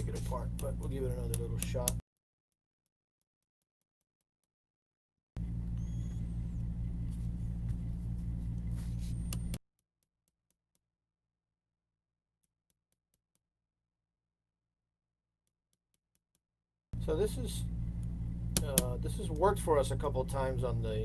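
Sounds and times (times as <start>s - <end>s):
small electric motor humming: 5.4s - 9.6s.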